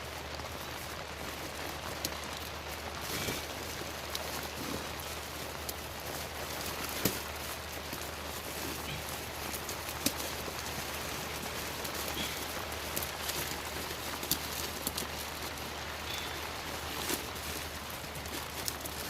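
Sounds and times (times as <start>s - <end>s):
crinkly rustle of air duct: 0.0s - 19.0s.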